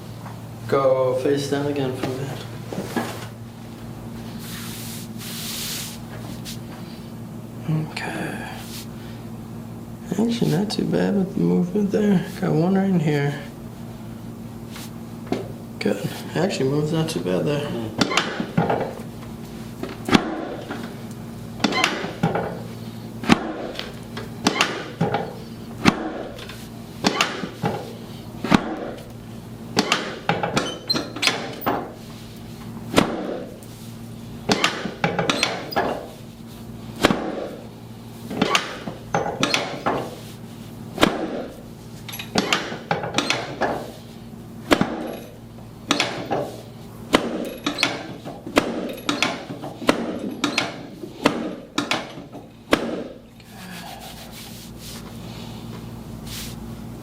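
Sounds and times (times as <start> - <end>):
sharp knocks: 29.8 - 31.9, 34.5 - 36.0, 45.9 - 53.2.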